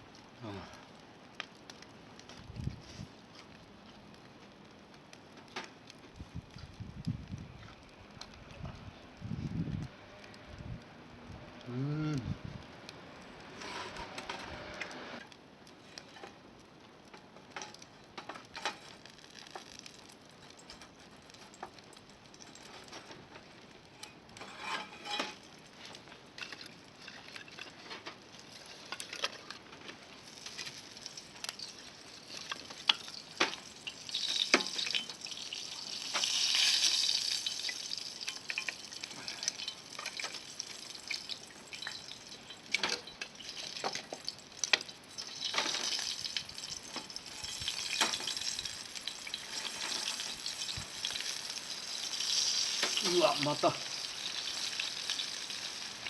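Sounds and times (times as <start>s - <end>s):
hissing sizzle: 0.0s - 56.0s
wood fire crackling and popping: 0.0s - 56.0s
faint hiss: 11.4s - 12.4s, 29.8s - 56.0s.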